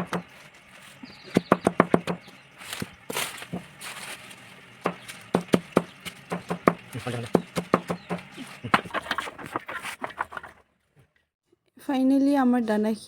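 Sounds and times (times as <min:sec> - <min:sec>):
knife chopping on cutting board: 0:01.3 - 0:02.3, 0:04.8 - 0:09.0
rustling scrape: 0:02.6 - 0:05.3, 0:08.3 - 0:10.6.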